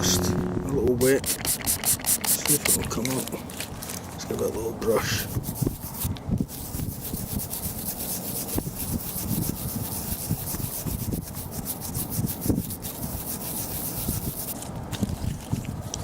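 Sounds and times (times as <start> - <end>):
small brush scrubbing metal: 1.0 - 3.2, 5.0 - 14.6.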